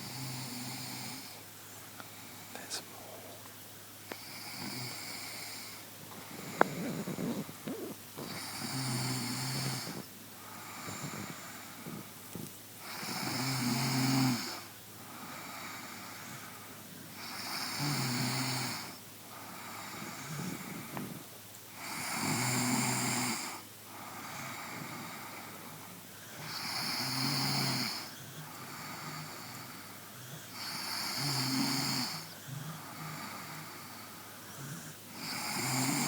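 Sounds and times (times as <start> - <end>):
quiet breathing: 0.0 - 36.0
person snoring: 4.2 - 12.2, 17.2 - 21.2, 26.4 - 29.8, 30.5 - 36.0.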